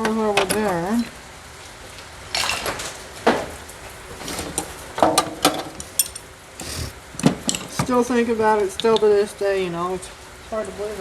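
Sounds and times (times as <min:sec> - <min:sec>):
metal tools clinking: 0:03.8 - 0:06.2.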